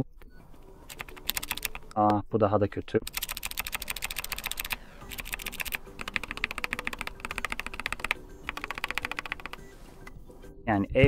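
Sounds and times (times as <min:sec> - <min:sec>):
scratchy key sound: 0:00.8 - 0:02.0, 0:03.0 - 0:10.1
keyboard keystrokes: 0:00.9 - 0:02.1, 0:03.0 - 0:09.7.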